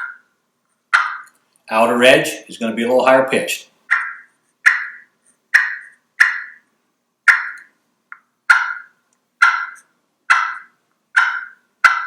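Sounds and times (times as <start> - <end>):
turkey call clucks: 0.0 - 0.3, 0.9 - 1.3, 3.9 - 6.7, 7.3 - 7.8, 8.5 - 12.0.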